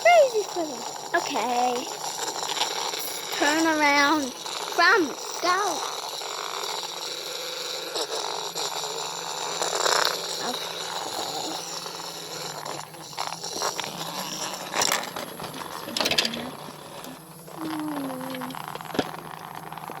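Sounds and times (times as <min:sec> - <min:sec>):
plastic toy pieces clicking: 0:13.6 - 0:20.0.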